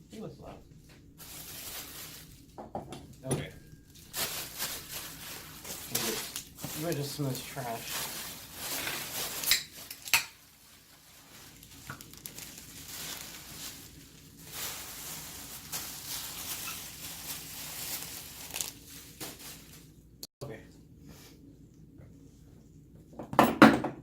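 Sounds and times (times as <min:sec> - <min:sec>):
packaging rustling and crinkling: 0:01.2 - 0:02.5, 0:03.9 - 0:20.0.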